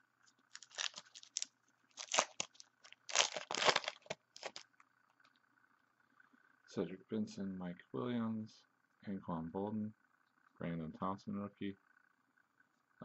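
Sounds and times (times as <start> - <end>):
foil wrapper tearing and crinkling: 0.5 - 4.6.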